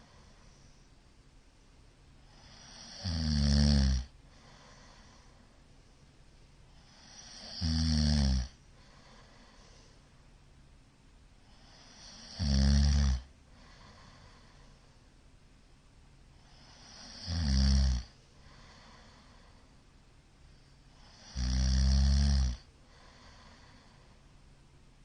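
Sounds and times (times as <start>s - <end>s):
man snoring loudly: 2.3s - 4.1s, 6.9s - 8.6s, 11.6s - 13.3s, 16.5s - 18.8s, 21.0s - 23.7s.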